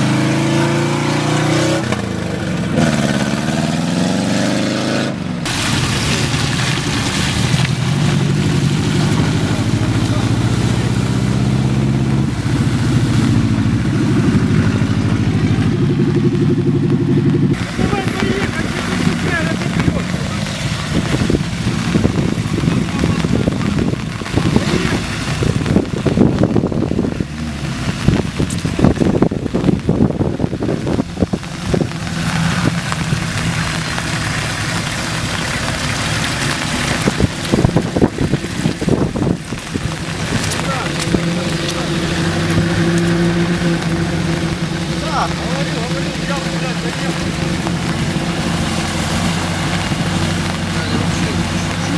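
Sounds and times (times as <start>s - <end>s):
car engine revving under load: 0.0s - 51.9s
knocks and splashy noise: 0.0s - 51.9s
wind noise on microphone: 5.4s - 45.5s.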